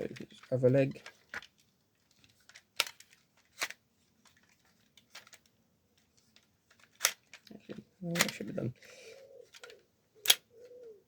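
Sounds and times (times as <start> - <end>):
plastic toy parts clicking: 0.0 - 8.7, 9.4 - 10.6.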